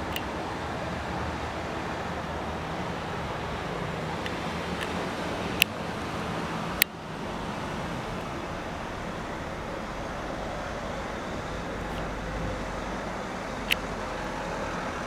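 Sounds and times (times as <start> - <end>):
rushing outdoor noise: 0.0 - 15.0
sharp clicks: 4.2 - 5.9.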